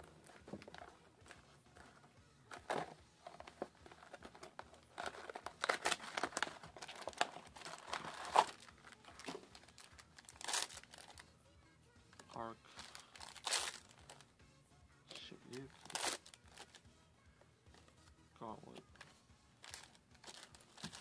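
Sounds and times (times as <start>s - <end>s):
foil pack crinkling: 3.6s - 11.2s, 12.7s - 14.1s, 15.5s - 16.8s, 19.6s - 21.0s.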